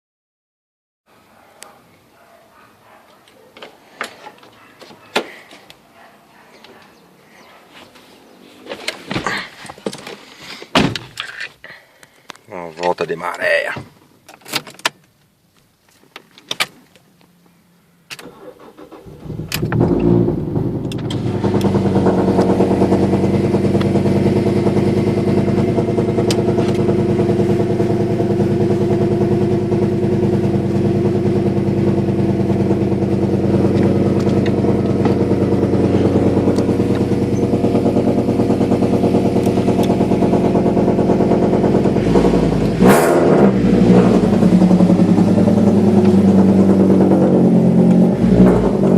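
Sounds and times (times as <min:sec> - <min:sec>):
car engine cranking and starting: 0:18.1 - 0:48.9
engine revving: 0:18.3 - 0:48.9
car engine idling with loud rumble: 0:19.0 - 0:48.9.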